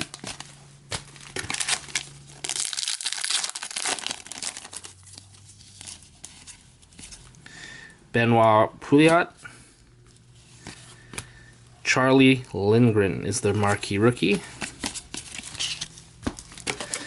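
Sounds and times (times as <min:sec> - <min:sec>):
wrapper crinkling and tearing: 0:00.0 - 0:06.2
cards being handled: 0:13.6 - 0:17.0.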